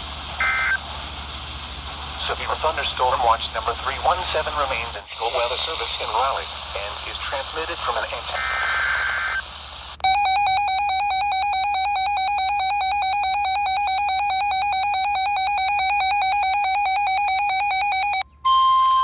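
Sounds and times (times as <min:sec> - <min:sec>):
warbling two-pitch alarm siren: 0:00.4 - 0:00.8, 0:10.0 - 0:19.0
steady single alarm tone: 0:10.0 - 0:19.0.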